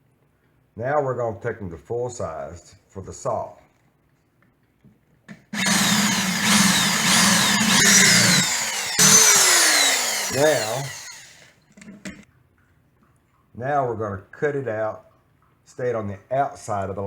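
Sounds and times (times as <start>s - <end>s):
power drill boring into wood: 5.6s - 11.5s.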